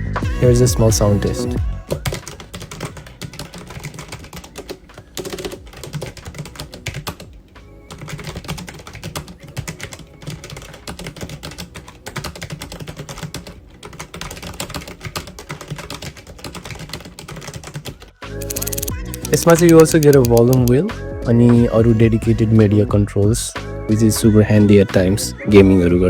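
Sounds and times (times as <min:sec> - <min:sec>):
mechanical keyboard typing: 0:02.0 - 0:07.3, 0:07.9 - 0:20.9.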